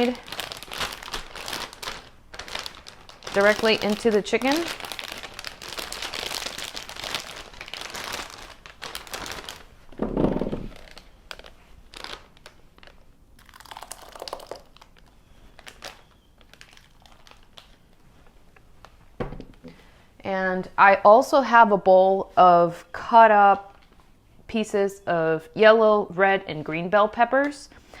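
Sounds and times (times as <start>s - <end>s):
plastic bag crinkling: 0.0s - 18.2s
marinade pouring: 13.4s - 15.0s.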